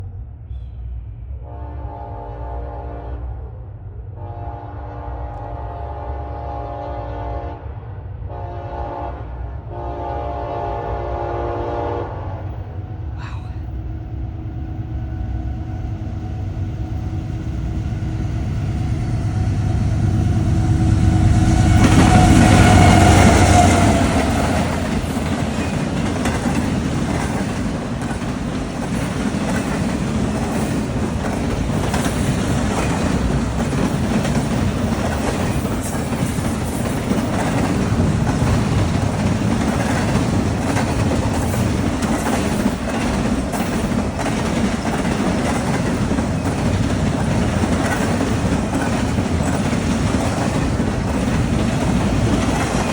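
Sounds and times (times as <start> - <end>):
train passing: 0.0 - 52.9
wheels clacking over rail joints: 21.2 - 52.9.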